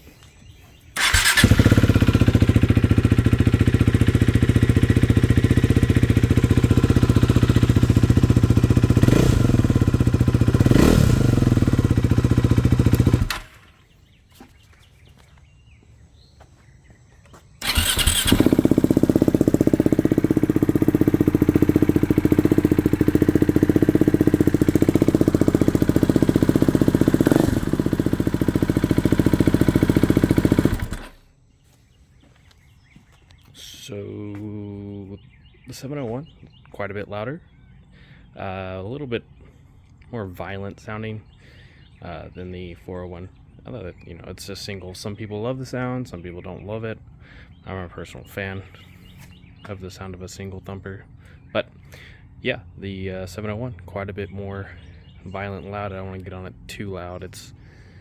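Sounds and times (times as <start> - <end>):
motorcycle engine revving: 1.0 - 13.8, 17.6 - 31.2
motorcycle starting up: 1.0 - 13.8, 17.6 - 31.3
motorcycle engine idling: 1.0 - 14.2, 17.6 - 31.3, 46.5 - 52.4, 53.0 - 58.0.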